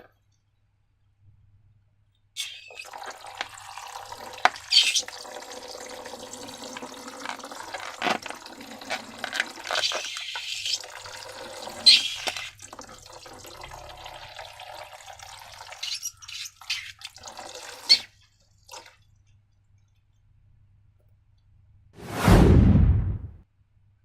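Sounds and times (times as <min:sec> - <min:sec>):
thick liquid pouring and dripping: 0:02.8 - 0:20.3.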